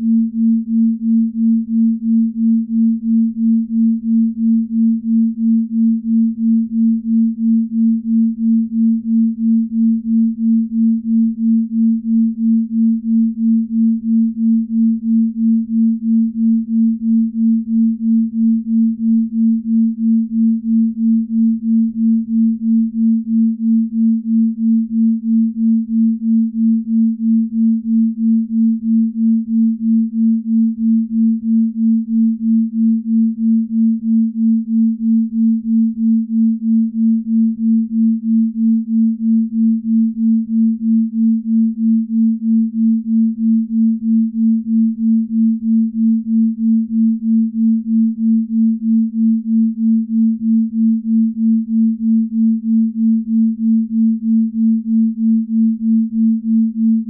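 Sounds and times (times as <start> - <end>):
pulsing pure tone: 0.0 - 57.0.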